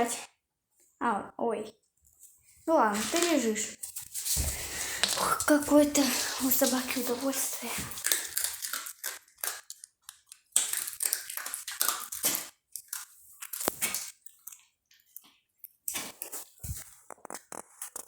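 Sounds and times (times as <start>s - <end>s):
dog crunching dry kibble: 3.0s - 15.3s, 15.9s - 18.0s.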